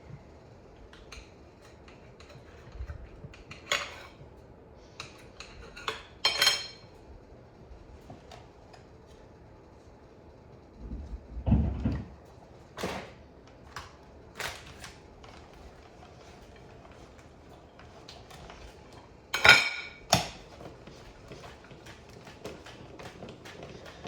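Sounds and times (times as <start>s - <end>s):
utensils and dishes clattering: 2.2s - 4.2s, 5.1s - 6.9s, 19.4s - 20.4s.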